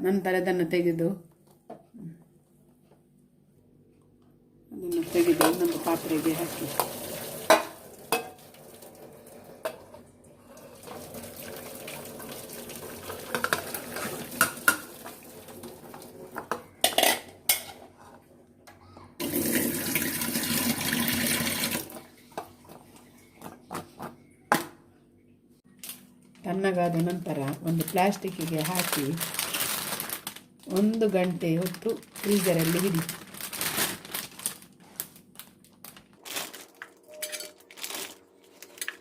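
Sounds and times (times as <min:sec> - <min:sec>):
water pouring: 0:05.0 - 0:09.6, 0:10.4 - 0:16.4, 0:19.2 - 0:22.3
metal kitchen utensils clinking: 0:16.4 - 0:17.8, 0:37.1 - 0:38.2.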